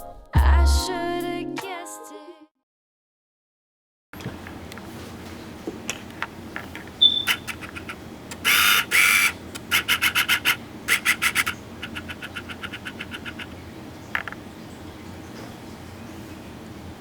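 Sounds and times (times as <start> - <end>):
rapid scratching: 7.2 - 13.6.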